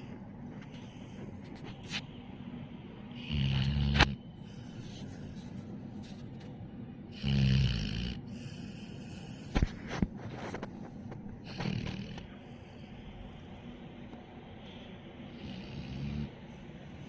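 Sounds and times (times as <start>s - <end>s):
dog snoring: 3.1s - 5.0s, 7.1s - 10.0s, 11.4s - 12.4s, 15.3s - 16.6s.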